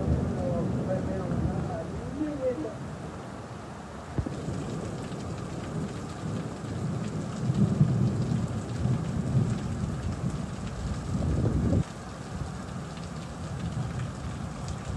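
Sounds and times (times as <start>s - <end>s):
heavy rain pouring: 0.0s - 14.9s.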